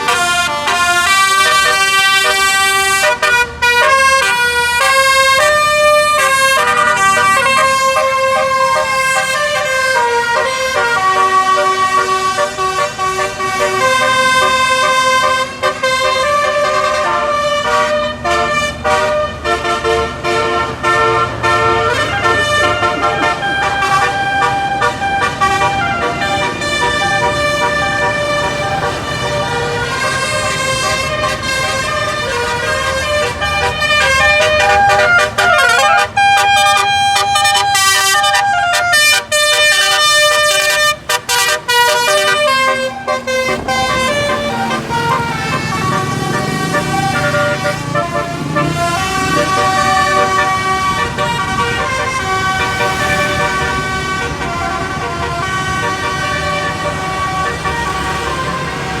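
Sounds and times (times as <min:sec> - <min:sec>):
multi-tone air horn playing a tune: 0:00.0 - 0:59.0.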